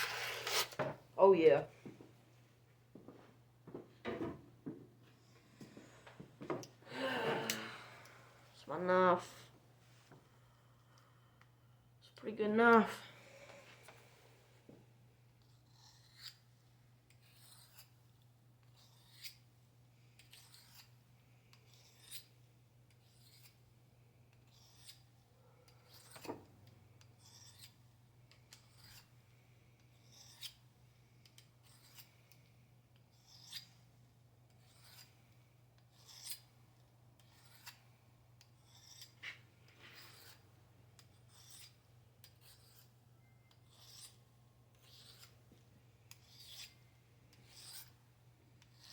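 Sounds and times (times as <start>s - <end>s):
knife scraping on sharpener: 0.0s - 0.9s, 15.5s - 16.4s, 17.1s - 18.0s, 18.6s - 19.4s, 20.2s - 21.0s, 21.6s - 23.6s, 24.5s - 25.1s, 25.7s - 26.4s, 27.2s - 29.1s, 30.0s - 30.6s, 31.3s - 32.2s, 33.2s - 33.8s, 34.5s - 35.1s, 35.8s - 36.5s, 37.2s - 37.9s, 38.5s - 40.4s, 41.0s - 45.4s, 46.1s - 48.0s, 48.6s - 48.9s.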